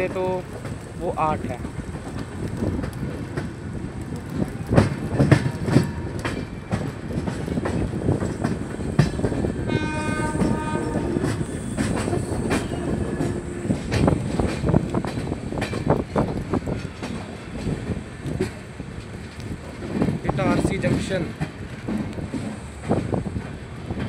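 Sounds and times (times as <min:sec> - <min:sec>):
train rumbling: 0:00.0 - 0:24.0
wheels clacking over rail joints: 0:00.0 - 0:24.0
train horn: 0:05.5 - 0:06.3, 0:09.6 - 0:14.0.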